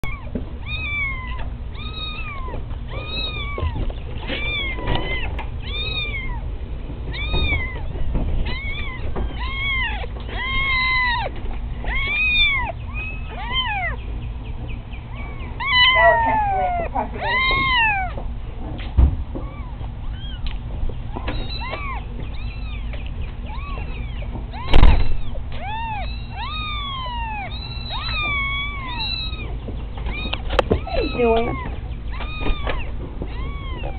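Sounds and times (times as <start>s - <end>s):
kittens meowing: 0.0s - 18.4s, 19.3s - 33.9s
sharp thump: 24.7s - 25.2s.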